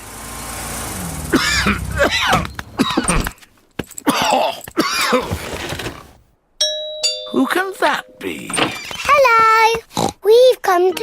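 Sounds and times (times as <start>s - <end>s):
cartoon character coughing: 1.4s - 3.4s, 4.0s - 5.2s.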